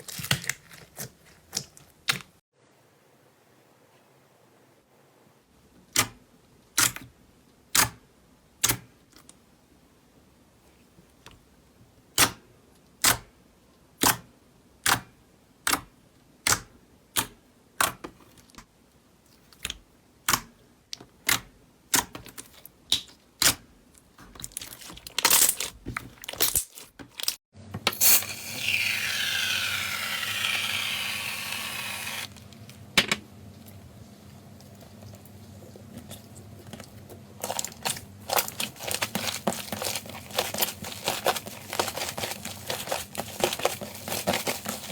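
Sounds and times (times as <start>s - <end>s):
slime crackling: 35.9s - 44.9s.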